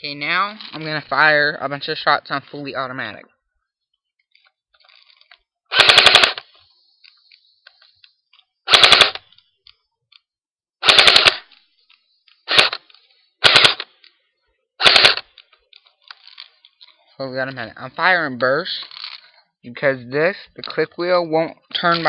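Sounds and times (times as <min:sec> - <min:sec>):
airsoft rifle firing bursts: 0:05.7 - 0:06.4, 0:08.7 - 0:09.2, 0:10.8 - 0:11.5, 0:12.5 - 0:12.8, 0:13.4 - 0:13.9, 0:14.8 - 0:15.3.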